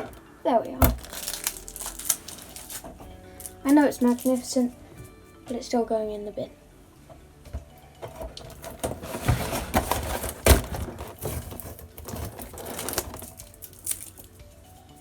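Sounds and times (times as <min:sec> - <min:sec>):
packaging crinkling: 0:00.9 - 0:04.7, 0:08.4 - 0:14.4.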